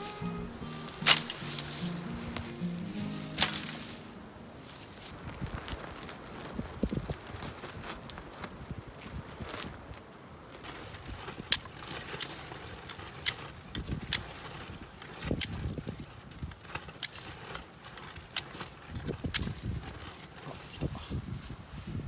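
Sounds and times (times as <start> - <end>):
hard objects clicking and knocking: 11.3 - 15.7, 16.4 - 20.0.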